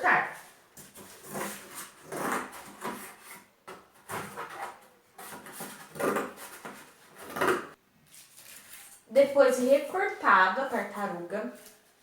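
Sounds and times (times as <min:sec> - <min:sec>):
scissors cutting cardboard: 0:00.9 - 0:09.0.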